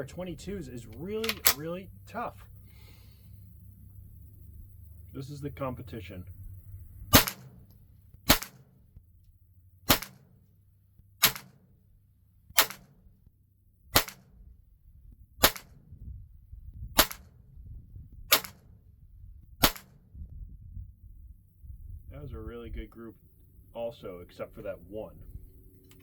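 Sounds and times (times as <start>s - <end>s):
rifle shots cracking: 7.1s - 7.7s, 8.3s - 8.8s, 9.9s - 10.4s, 11.2s - 11.6s, 12.6s - 13.0s, 13.9s - 14.4s, 15.4s - 15.8s, 17.0s - 17.3s, 18.3s - 18.7s, 19.6s - 20.0s.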